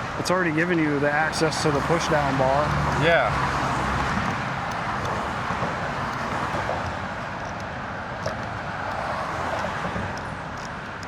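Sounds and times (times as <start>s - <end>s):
passing cars: 0.0s - 11.0s.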